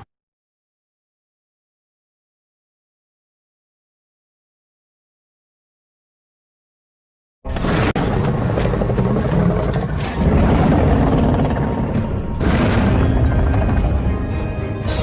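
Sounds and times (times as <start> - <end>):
deep creature growl: 7.7 - 14.4.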